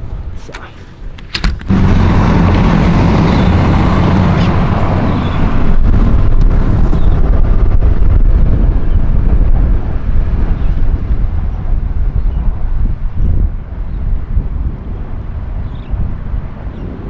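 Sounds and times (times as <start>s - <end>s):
snowplow engine running: 1.6s - 7.4s.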